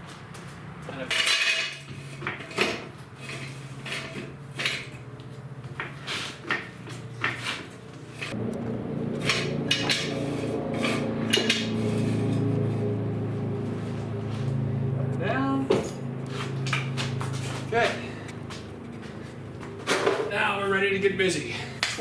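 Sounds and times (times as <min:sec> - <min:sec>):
steady low hum: 0:00.0 - 0:22.0
metal clinking and knocking: 0:09.2 - 0:10.2.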